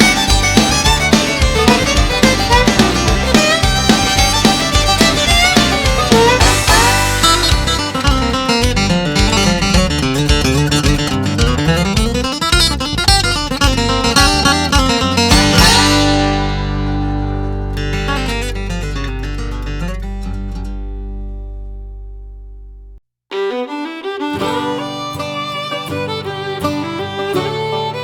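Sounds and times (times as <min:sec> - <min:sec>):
guitar chord ringing out: 0:00.0 - 0:09.6, 0:15.3 - 0:23.0
acoustic guitar picking: 0:00.0 - 0:28.0.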